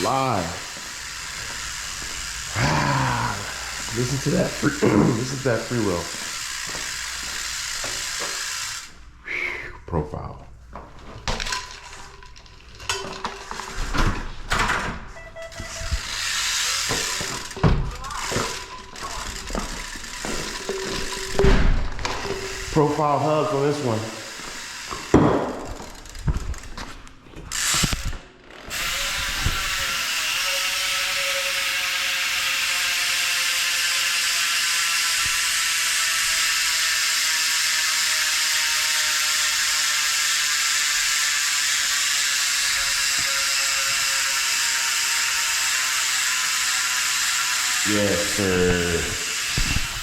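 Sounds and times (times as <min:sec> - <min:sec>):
knocks from handling bike: 0:25.0 - 0:25.9.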